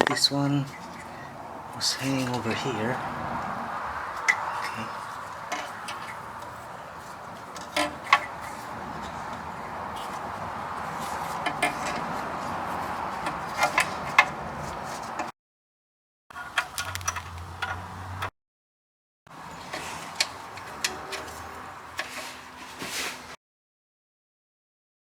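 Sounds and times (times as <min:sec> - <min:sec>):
light metallic clicks and knocks: 0:19.6 - 0:22.2.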